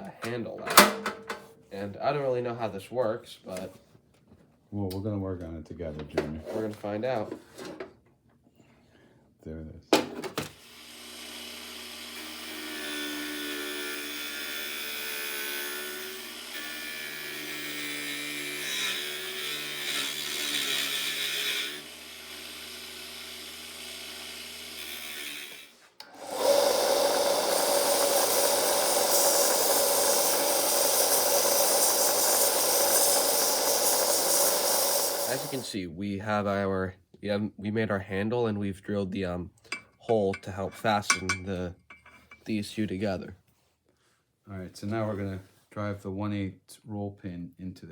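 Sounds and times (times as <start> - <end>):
tool cutting spinning wood: 10.6 - 35.7
lathe motor running: 26.0 - 35.7
steady machining noise: 26.1 - 35.7.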